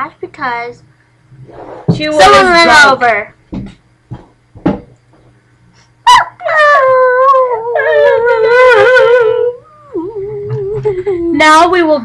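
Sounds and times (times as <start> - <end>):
dog howling: 6.1 - 10.8.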